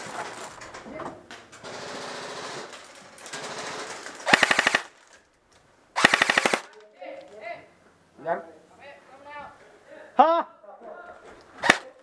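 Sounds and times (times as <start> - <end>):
airsoft gun full auto fire: 3.4 - 5.0, 6.0 - 6.8, 11.6 - 12.0.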